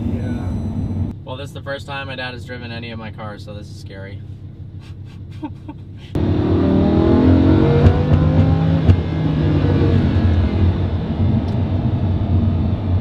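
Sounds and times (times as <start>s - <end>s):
sports car engine accelerating: 6.1s - 13.0s.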